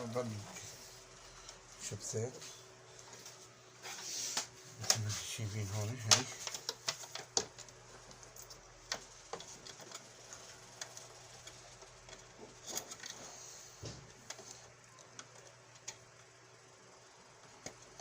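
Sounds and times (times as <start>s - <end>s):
faint steady hum: 0.0s - 18.0s
plastic parts clicking and tapping: 6.0s - 13.2s.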